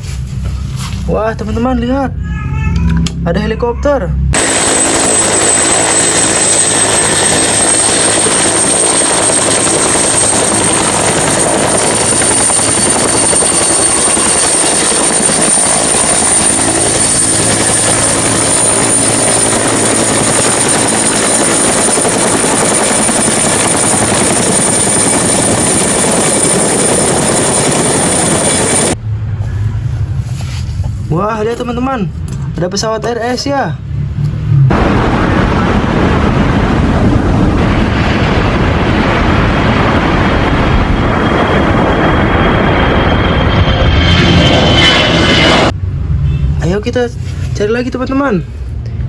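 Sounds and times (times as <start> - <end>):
toy helicopter rotor whirring: 4.4 - 29.0.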